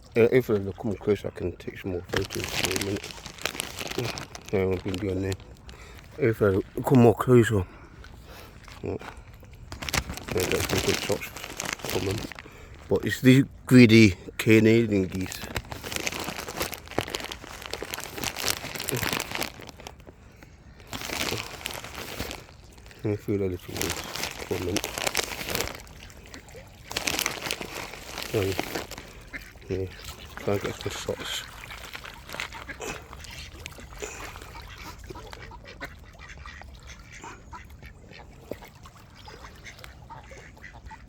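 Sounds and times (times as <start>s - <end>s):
bag of seed crinkling: 1.8s - 7.0s, 9.7s - 34.8s
ducks quacking: 20.5s - 41.0s.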